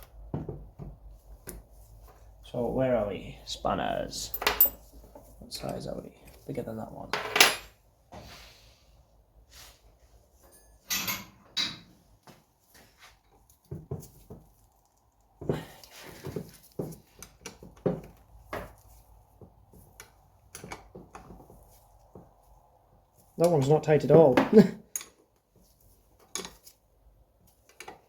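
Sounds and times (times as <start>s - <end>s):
metal spanners clinking: 4.3s - 4.9s, 10.5s - 11.9s.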